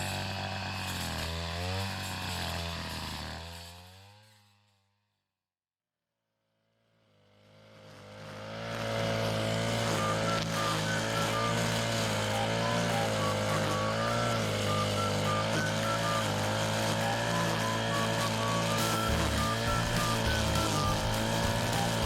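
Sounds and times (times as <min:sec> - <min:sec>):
small engine running: 0:00.0 - 0:05.2, 0:06.7 - 0:22.0
background music: 0:10.0 - 0:22.0.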